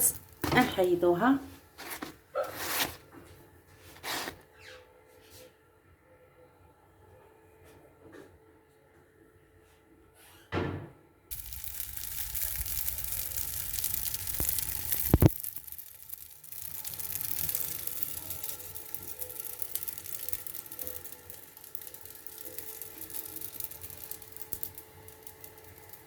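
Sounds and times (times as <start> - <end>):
food sizzling in a hot pan: 0.0 - 0.5, 11.3 - 26.0.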